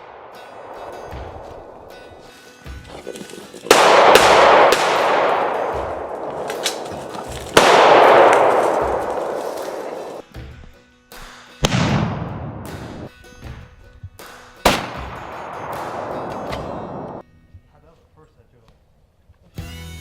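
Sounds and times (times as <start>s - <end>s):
pistol shots with echo: 0.0s - 2.3s, 3.7s - 10.2s, 11.6s - 13.1s, 14.7s - 17.2s
background music: 0.0s - 18.5s, 19.4s - 20.0s.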